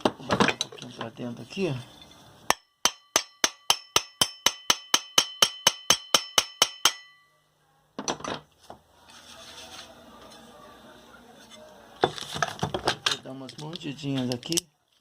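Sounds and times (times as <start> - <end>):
hammer tapping metal: 2.5 - 7.4.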